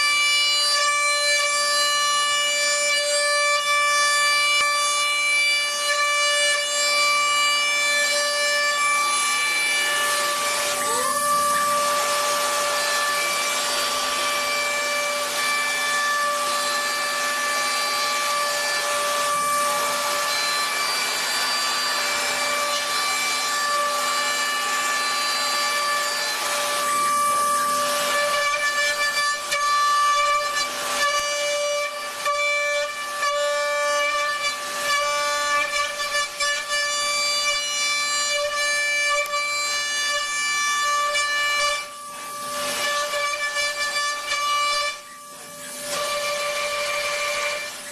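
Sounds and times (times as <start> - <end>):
cnc machine whine: 0.0 - 47.9
cutting hiss: 10.0 - 22.9.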